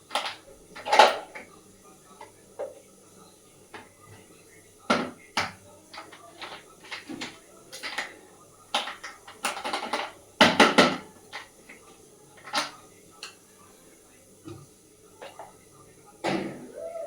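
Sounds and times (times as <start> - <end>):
kitchen utensils clattering on dishes: 0.0 - 1.4.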